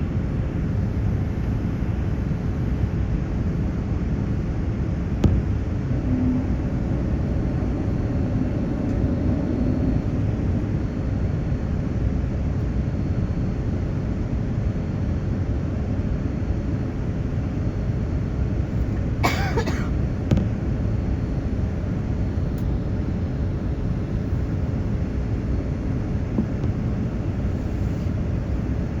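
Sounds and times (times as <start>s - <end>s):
airliner cabin noise: 0.2s - 29.0s
person coughing: 19.2s - 19.9s.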